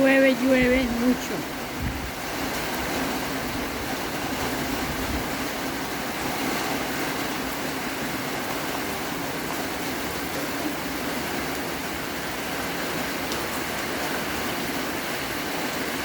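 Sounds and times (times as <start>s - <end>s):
heavy rain hissing: 0.0s - 16.0s.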